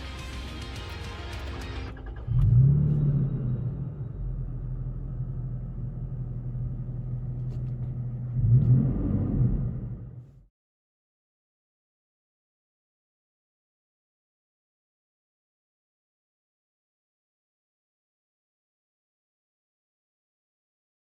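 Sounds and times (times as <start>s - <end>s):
engine revving: 0.0s - 10.3s
car engine starting and idling: 0.0s - 10.4s.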